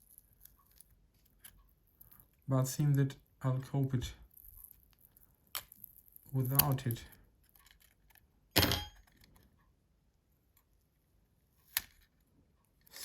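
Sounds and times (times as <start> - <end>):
tool clattering on hard surface: 8.6 - 9.1.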